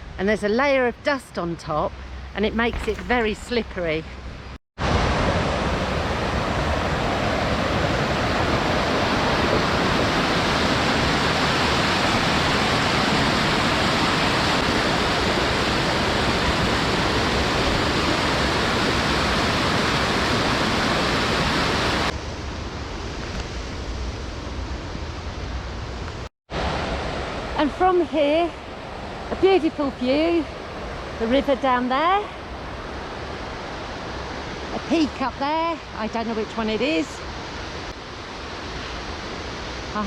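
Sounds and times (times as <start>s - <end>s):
river water rushing: 2.0s - 22.1s.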